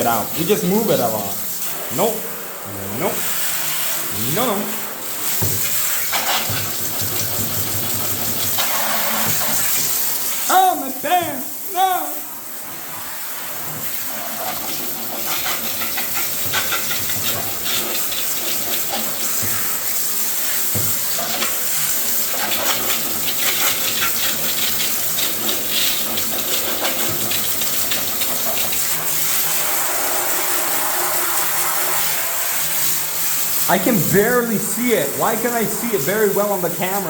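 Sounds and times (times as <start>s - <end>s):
water running from a tap: 0.0s - 37.0s
knocks and clatter of dishes: 5.4s - 8.6s.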